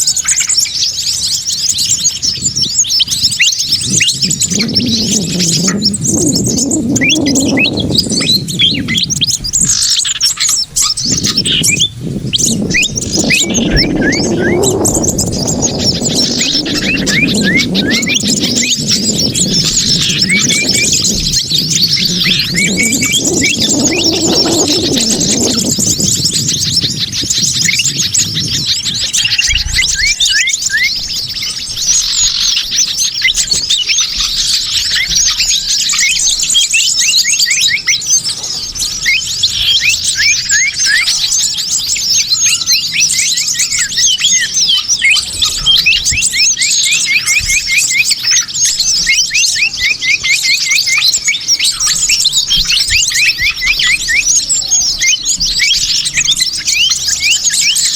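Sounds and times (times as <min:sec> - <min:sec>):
small birds chirping: 0:00.0 - 0:57.9
low falling-pitch sound: 0:03.8 - 0:09.2, 0:11.3 - 0:28.7.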